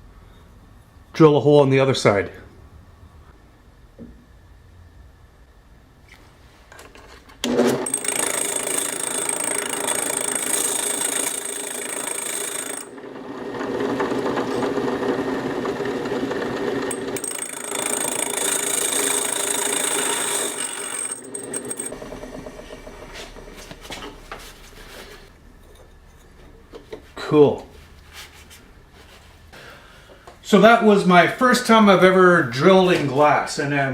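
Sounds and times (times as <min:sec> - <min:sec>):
drill grinding through glass: 0:07.8 - 0:13.0, 0:16.9 - 0:21.9.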